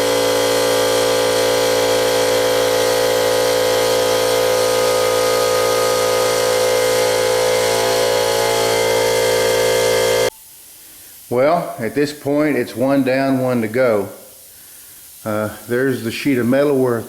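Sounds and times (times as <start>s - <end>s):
plasma cutter cutting steel: 0.0s - 10.3s.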